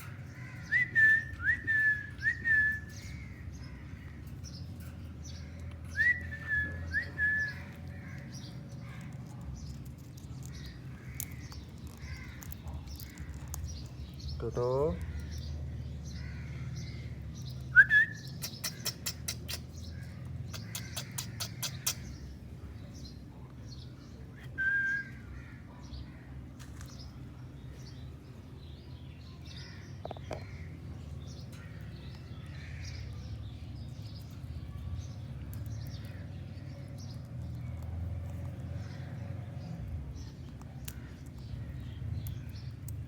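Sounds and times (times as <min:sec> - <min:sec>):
birds chirping: 0:00.0 - 0:43.0
parrots squawking: 0:18.4 - 0:22.2.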